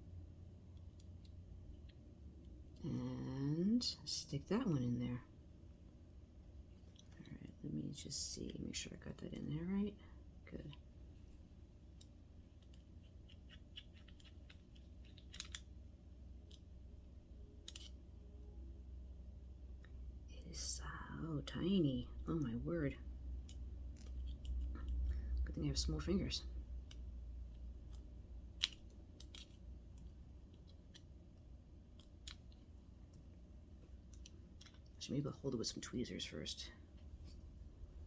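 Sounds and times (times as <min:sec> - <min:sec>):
small metal parts clicking: 0:11.9 - 0:15.8, 0:17.6 - 0:18.0, 0:26.7 - 0:31.2.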